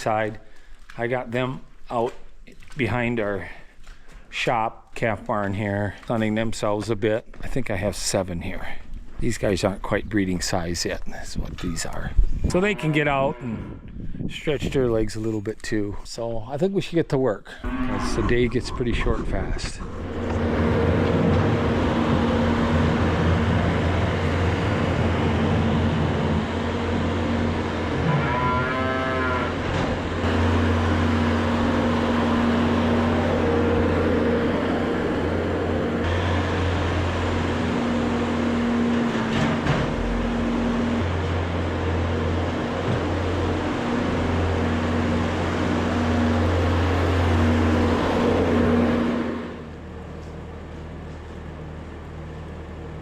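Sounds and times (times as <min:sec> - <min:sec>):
cow mooing: 0:12.5 - 0:13.9, 0:27.6 - 0:29.7
machine engine running: 0:17.6 - 0:28.0, 0:30.0 - 0:49.6.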